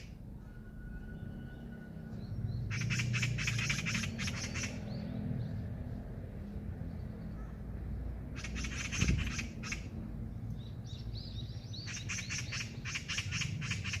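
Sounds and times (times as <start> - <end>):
magpie chattering: 2.7 - 4.8, 8.4 - 9.9, 11.8 - 14.0.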